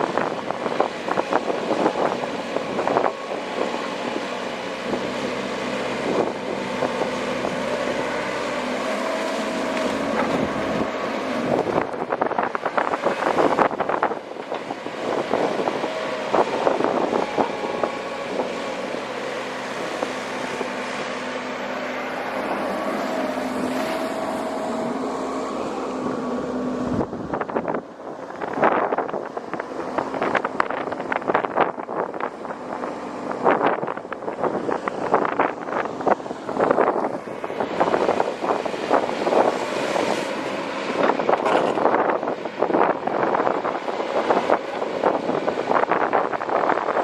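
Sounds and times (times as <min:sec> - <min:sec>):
diesel engine under load: 0:00.0 - 0:47.0
excavator bucket clattering and scraping: 0:41.1 - 0:42.0.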